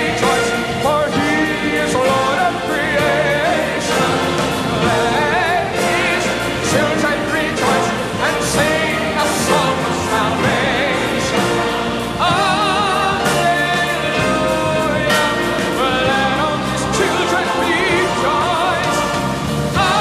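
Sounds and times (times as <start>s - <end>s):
musical accompaniment: 0.0s - 20.0s.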